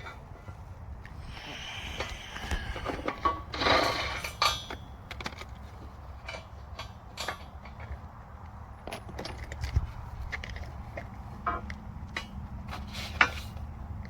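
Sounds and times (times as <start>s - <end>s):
scraping rush: 1.1s - 4.4s
metal tools clanking on wooden pallet: 2.6s - 5.5s.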